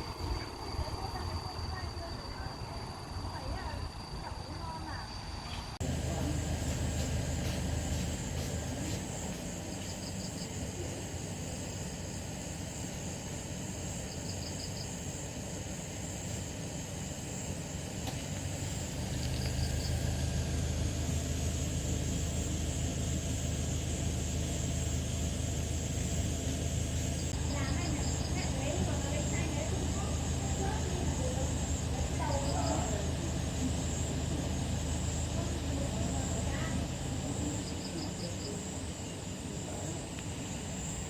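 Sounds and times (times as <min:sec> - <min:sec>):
engine hum: 0:00.0 - 0:41.0.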